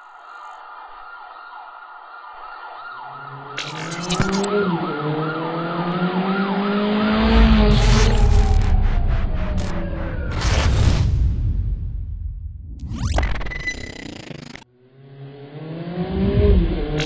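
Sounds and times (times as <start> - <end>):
siren yelping: 0.6 - 11.0
car engine driving: 4.2 - 13.4.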